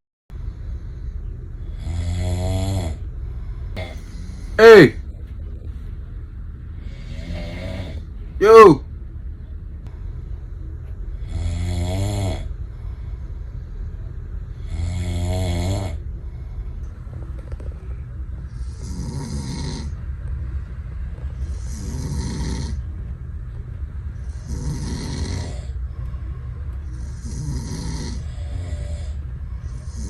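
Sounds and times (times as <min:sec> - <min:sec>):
person snoring: 0:03.8 - 0:04.9, 0:06.9 - 0:08.8.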